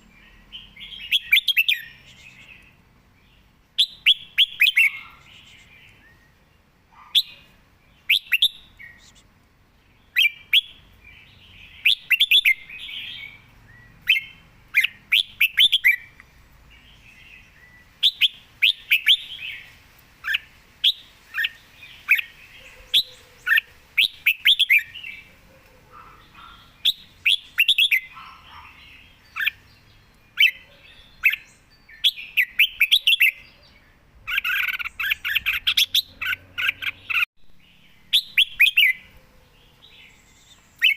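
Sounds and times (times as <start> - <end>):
bird chirping: 0.0 - 40.9.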